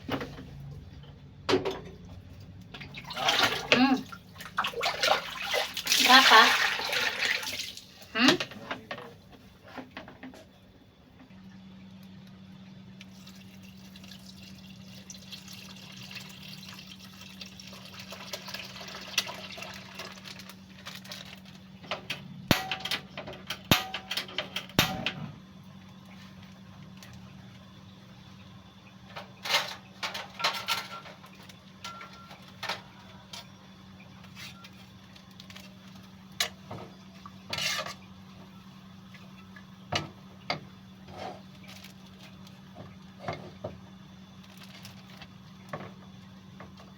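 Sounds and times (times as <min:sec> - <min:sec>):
water running and splashing: 0:02.9 - 0:08.2, 0:13.1 - 0:20.6
steady low hum: 0:20.8 - 0:46.9
utensils clinking on dishes: 0:29.3 - 0:33.5.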